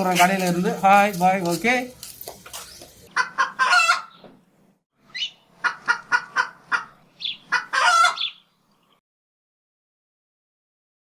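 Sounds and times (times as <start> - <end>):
chicken clucking: 3.1 - 4.2, 5.2 - 8.4.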